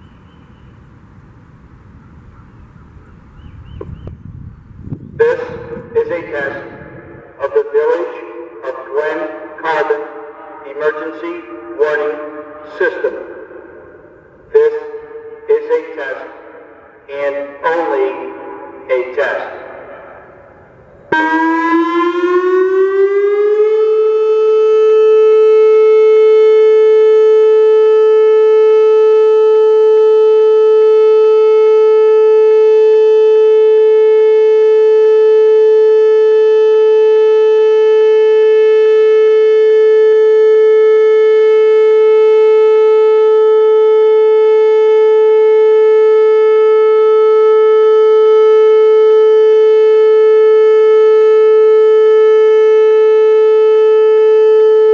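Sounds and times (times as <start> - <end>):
warning siren: 0.0 - 54.9.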